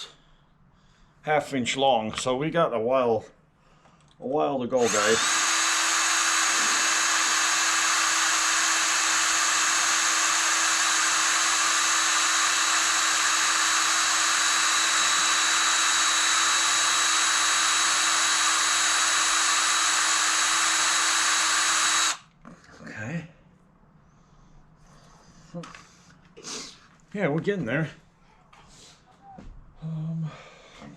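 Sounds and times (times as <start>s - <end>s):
electric drill whining: 4.8s - 22.3s.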